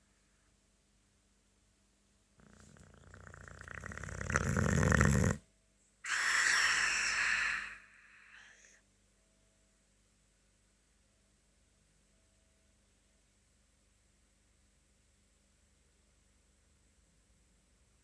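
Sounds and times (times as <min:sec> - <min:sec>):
dog snoring: 0:02.4 - 0:05.4.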